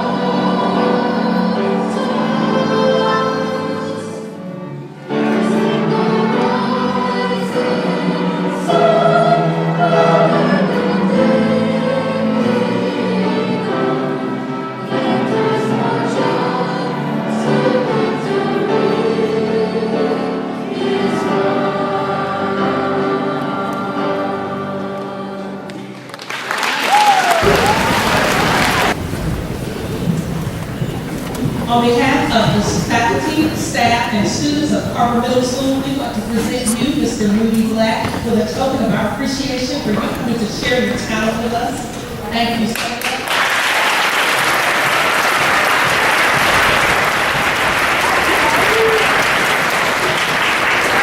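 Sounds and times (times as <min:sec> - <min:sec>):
choir singing: 0:00.0 - 0:26.1, 0:27.4 - 0:43.0
loud applause: 0:25.7 - 0:34.2, 0:41.3 - 0:51.0.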